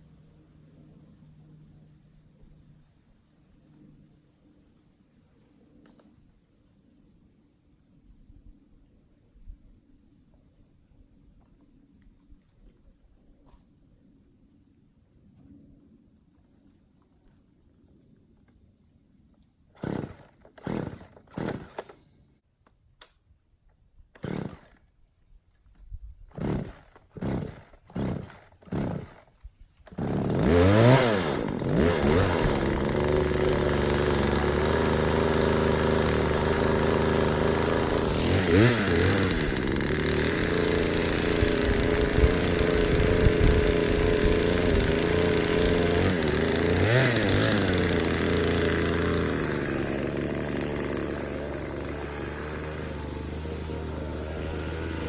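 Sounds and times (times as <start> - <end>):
chainsaw engine revving: 19.8 - 22.0, 24.2 - 24.8, 26.3 - 55.0
starter rope yanks: 19.8 - 22.0, 26.3 - 55.0.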